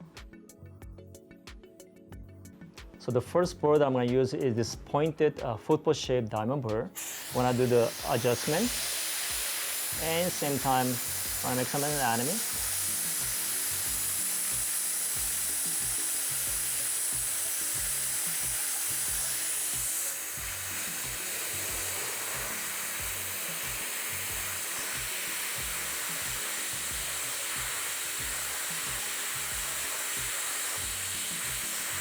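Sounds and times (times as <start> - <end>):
dental drill hissing: 7.0 - 32.0.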